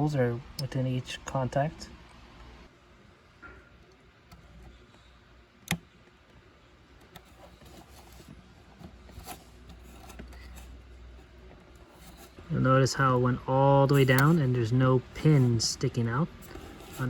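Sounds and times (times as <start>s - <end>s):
low steady hum: 0.0s - 17.0s
cable connector handling noises: 7.0s - 12.4s.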